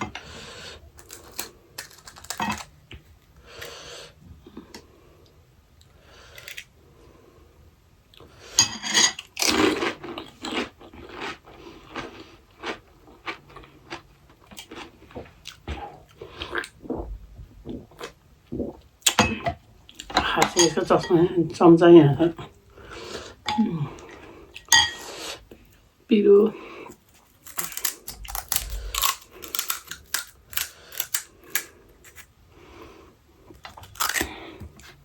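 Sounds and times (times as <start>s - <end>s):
crunching and chewing crisp food: 0.0s - 7.1s, 9.1s - 19.2s, 26.7s - 35.0s.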